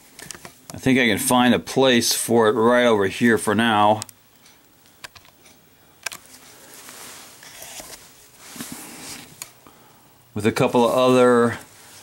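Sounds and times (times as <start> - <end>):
soft rustling: 6.2 - 9.4, 10.6 - 12.0.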